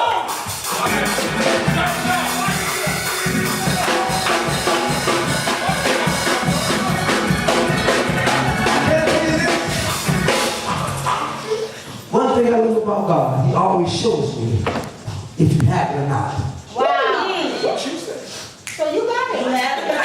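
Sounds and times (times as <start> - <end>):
drum kit beat: 0.0 - 11.6
live church band music: 0.0 - 13.4
organ chords: 0.6 - 11.8.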